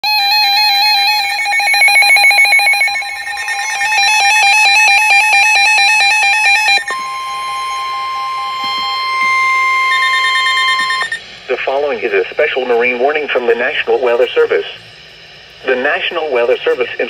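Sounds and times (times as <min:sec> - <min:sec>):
weather radio warning alarms beeping: 0:00.0 - 0:11.2
steady alert tone: 0:01.2 - 0:03.8.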